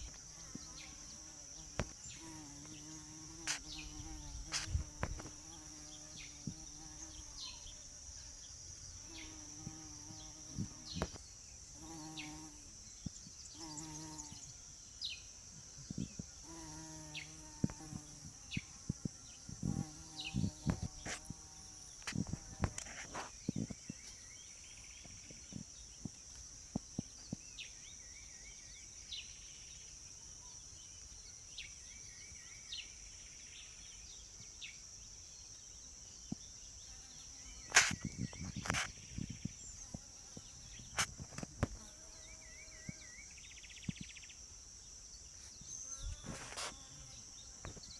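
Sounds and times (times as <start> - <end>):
bee buzzing in flight: 0.0 - 8.3, 9.0 - 12.9, 13.5 - 14.5, 15.9 - 23.5, 45.8 - 47.9
high insect trill: 0.0 - 47.9.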